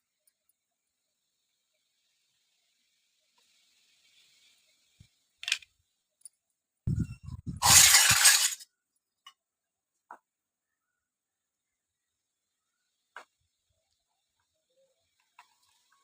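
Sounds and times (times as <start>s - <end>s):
toy kitchen pieces clinking: 5.4s - 5.7s, 7.6s - 8.7s
loud rattle: 7.6s - 8.6s.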